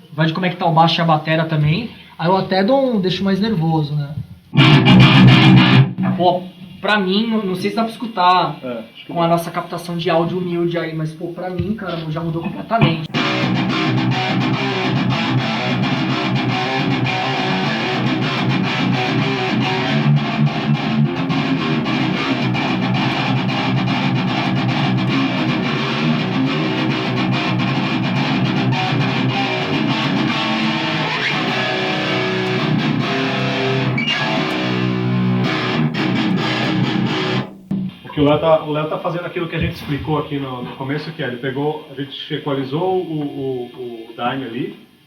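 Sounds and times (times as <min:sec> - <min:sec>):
distorted electric guitar riffing: 0:04.6 - 0:06.2, 0:12.8 - 0:38.1.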